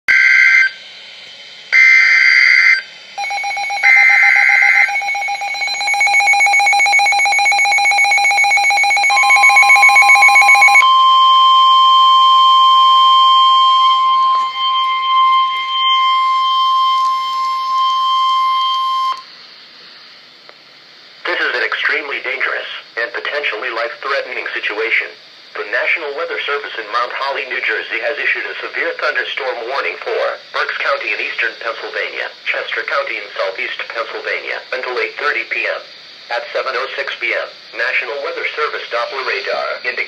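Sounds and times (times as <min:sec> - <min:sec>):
pulsing electronic alarm tone: 0:00.1 - 0:00.8, 0:01.8 - 0:19.2
steady single-pitch warning tone: 0:00.1 - 0:01.0, 0:01.7 - 0:19.4
screeching data bursts: 0:01.8 - 0:19.3.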